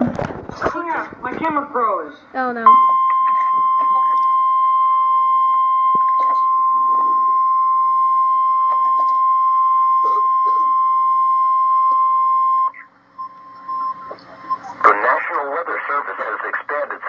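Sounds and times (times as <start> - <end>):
high-pitched warning tone from radio: 2.7 - 4.5, 5.5 - 15.0.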